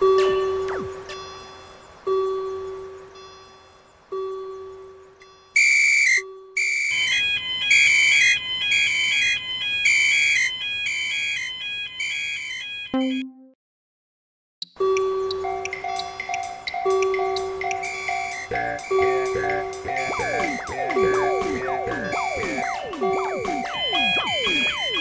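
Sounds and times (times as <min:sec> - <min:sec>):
two-pitch warbling beep: 0:13.0 - 0:13.5, 0:17.9 - 0:25.0
pulsing electronic alarm tone: 0:16.8 - 0:25.0.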